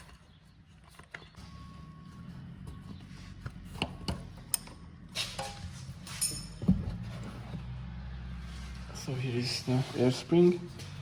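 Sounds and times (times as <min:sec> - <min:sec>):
metallic clinks and knocks: 0:03.8 - 0:07.2.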